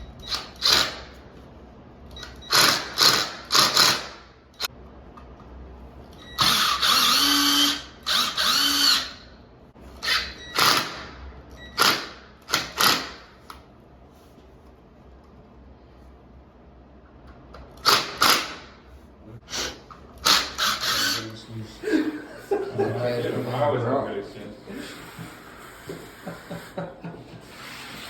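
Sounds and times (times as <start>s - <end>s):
cordless drill driving screws: 0.2s - 1.2s, 2.2s - 4.2s, 6.4s - 9.2s, 11.7s - 13.2s, 19.5s - 21.3s.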